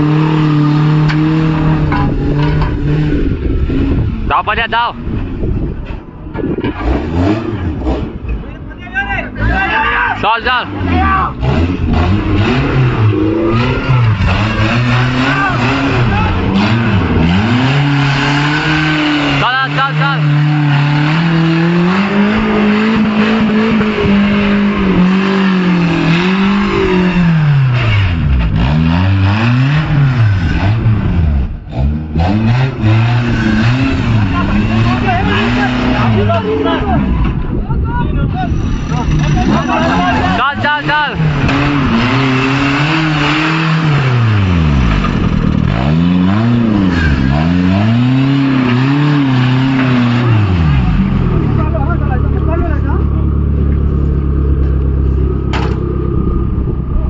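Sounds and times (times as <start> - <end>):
engine revving: 0.0 - 8.6, 9.2 - 37.6, 38.2 - 57.0
rushing noise: 10.2 - 51.8.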